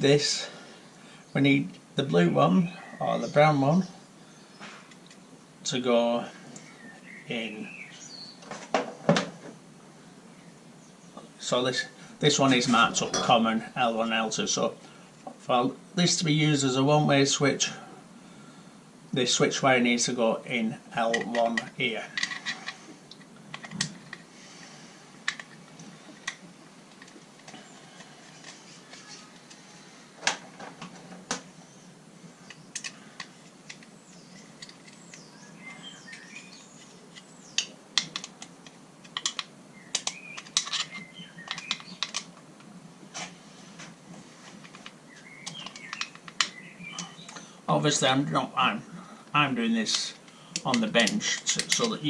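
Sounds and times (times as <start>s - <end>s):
small plastic and metal clicks: 36.2s - 42.3s.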